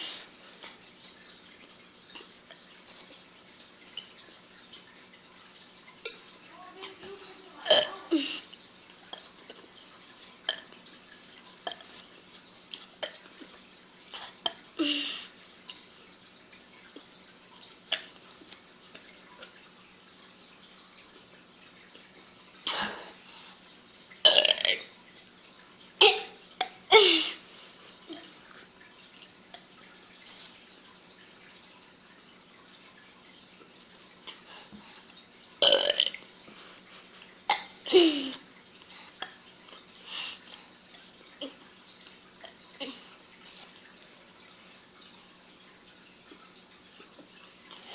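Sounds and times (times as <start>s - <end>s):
girl burping: 7.6s - 8.5s, 24.2s - 24.9s, 26.0s - 27.4s, 35.6s - 36.2s.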